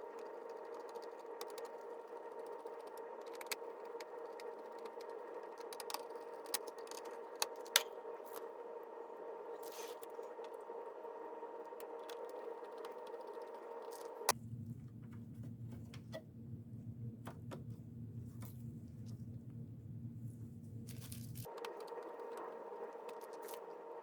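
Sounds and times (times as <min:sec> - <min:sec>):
steady hum: 0:00.0 - 0:24.0.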